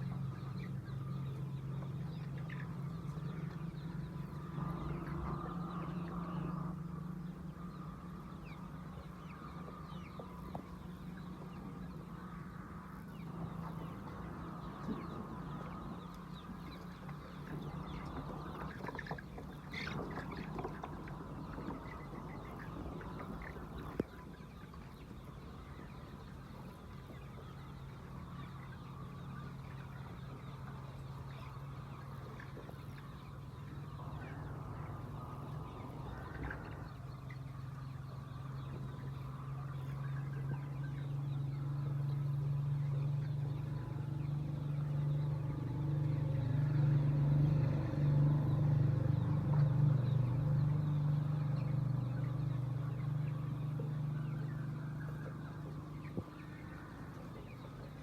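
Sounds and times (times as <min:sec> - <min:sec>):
hens clucking: 0:00.0 - 0:46.2
steady low hum: 0:00.0 - 0:58.0.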